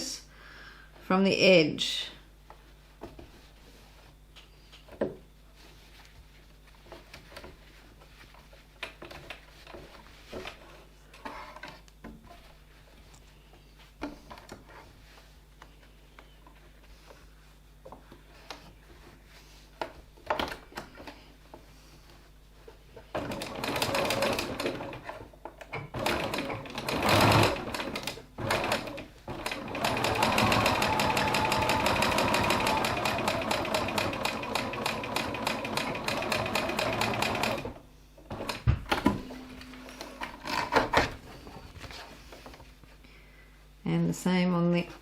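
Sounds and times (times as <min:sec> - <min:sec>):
sewing machine stitching: 0:23.2 - 0:25.2, 0:25.8 - 0:38.6.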